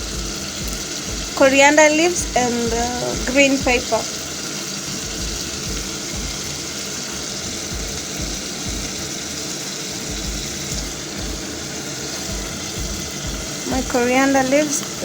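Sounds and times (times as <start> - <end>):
vegetables sizzling in a pan: 0.0 - 15.0
low thuds: 10.1 - 14.1.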